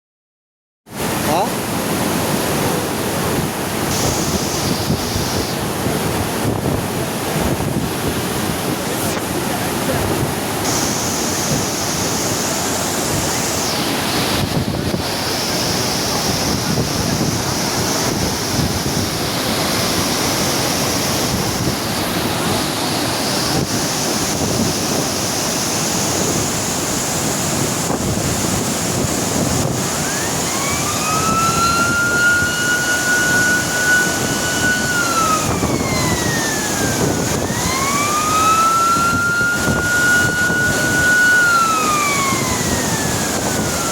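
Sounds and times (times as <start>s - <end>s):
water rushing through spillway: 0.9s - 43.9s
siren-like wailing tone: 29.7s - 43.9s.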